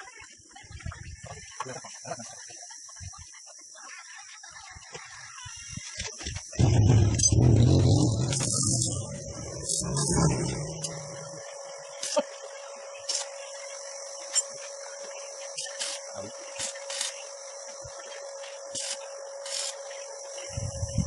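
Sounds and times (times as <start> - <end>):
insects chirring: 0.1 - 21.0
steady hum: 6.6 - 21.0.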